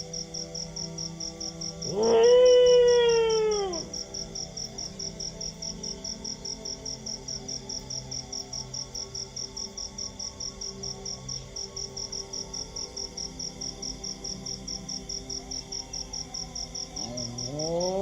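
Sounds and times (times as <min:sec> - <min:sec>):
crickets chirping: 0:00.0 - 0:18.0
dog howling: 0:01.8 - 0:04.0, 0:17.0 - 0:18.0.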